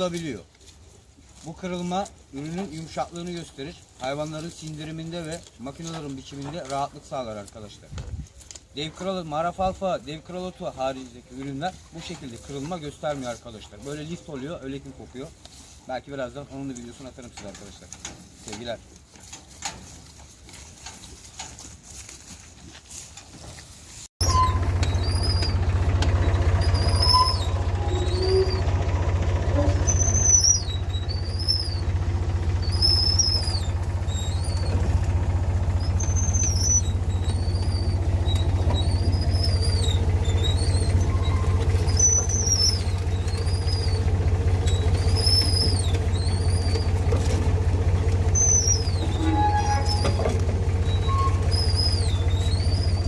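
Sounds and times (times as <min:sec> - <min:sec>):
machine engine humming: 0:24.2 - 0:53.0.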